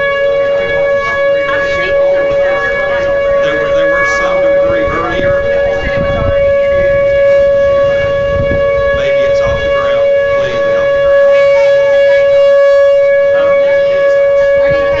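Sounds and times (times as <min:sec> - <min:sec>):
warning siren wailing: 0:00.0 - 0:15.0
low rumble: 0:00.6 - 0:12.1.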